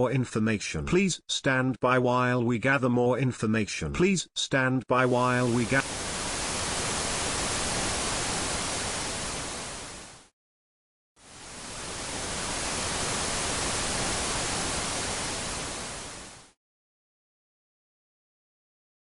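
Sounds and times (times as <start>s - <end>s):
tv static hiss: 5.0s - 10.3s, 11.2s - 16.6s.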